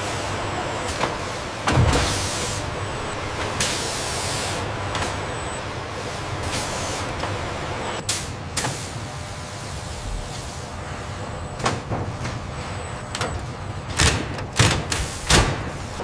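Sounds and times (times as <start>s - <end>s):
factory machinery hiss: 0.0s - 2.8s, 8.1s - 11.1s, 14.9s - 16.0s.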